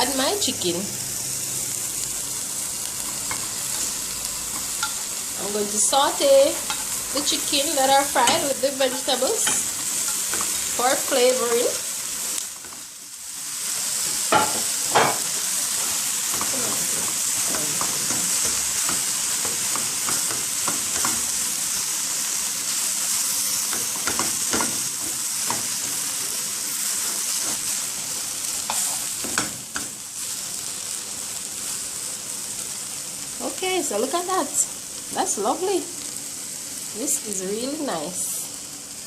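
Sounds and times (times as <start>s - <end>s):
chicken sizzling in oil: 0.0s - 39.0s.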